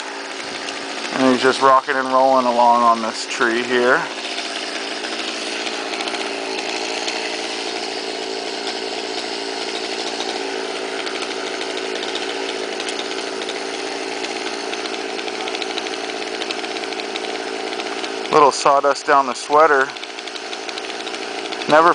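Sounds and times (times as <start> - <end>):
chainsaw cutting wood: 0.0 - 21.9.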